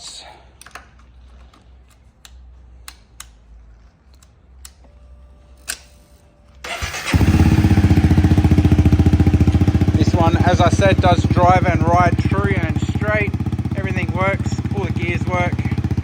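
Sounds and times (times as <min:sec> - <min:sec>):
motorcycle engine starting and idling: 0:06.6 - 0:16.0.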